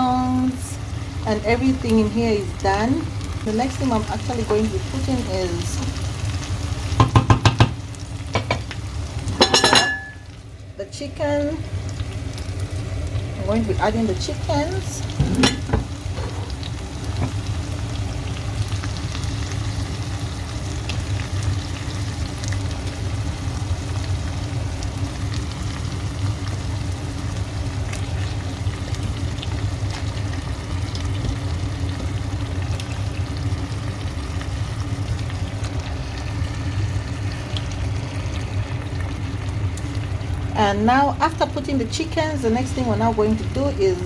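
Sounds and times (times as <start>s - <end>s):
constant low hum: 0.0s - 7.0s, 7.8s - 44.0s
chicken sizzling in pot: 0.0s - 44.0s
small crackles: 27.3s - 40.3s.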